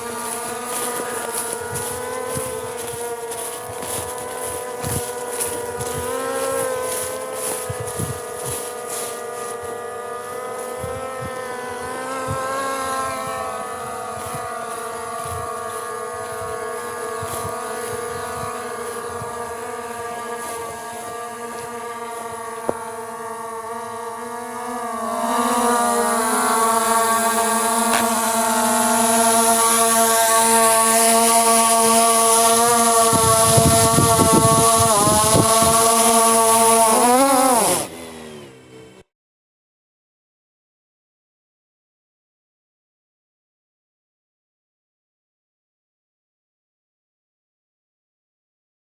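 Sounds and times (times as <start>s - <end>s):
wind rumble on microphone: 0.0s - 37.0s
drone propellers whining: 0.0s - 39.0s.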